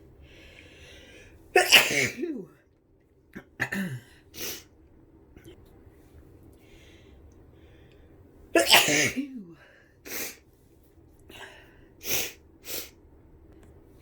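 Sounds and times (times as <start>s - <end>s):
person sneezing: 1.6s - 2.5s, 8.6s - 10.4s.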